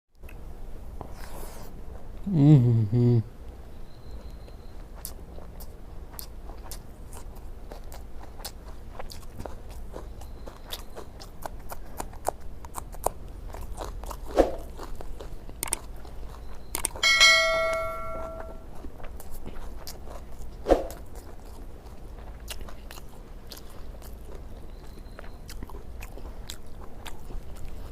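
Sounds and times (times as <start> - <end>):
chewing: 4.2 - 17.1, 18.6 - 27.9
metallic ring: 17.0 - 18.6.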